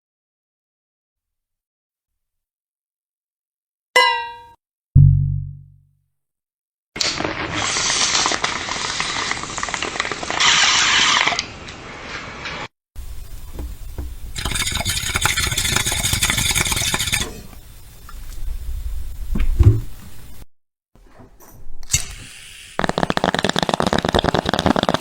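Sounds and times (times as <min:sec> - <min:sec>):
water bong bubbling: 0:13.6 - 0:17.4.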